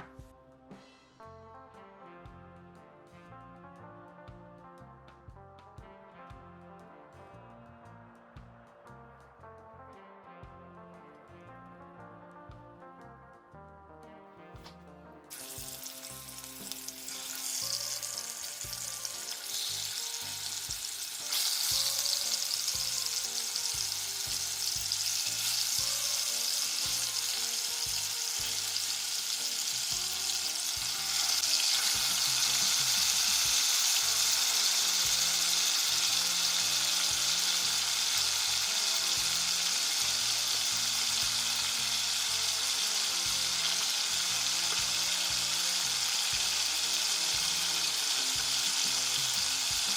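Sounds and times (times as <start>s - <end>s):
food sizzling in a pan: 15.3s - 49.9s.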